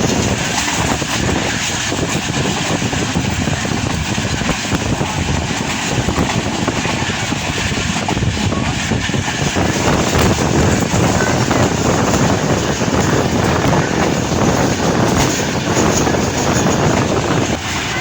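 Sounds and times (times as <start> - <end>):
train running rumble: 0.0 - 18.0.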